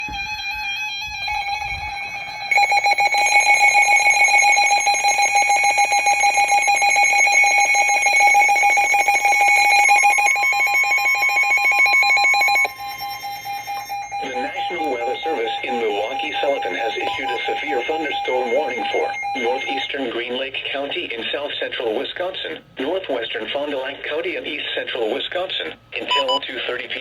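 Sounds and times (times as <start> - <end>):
pulsing alarm tone: 1.7 - 19.9
steady electronic tone: 12.2 - 19.9.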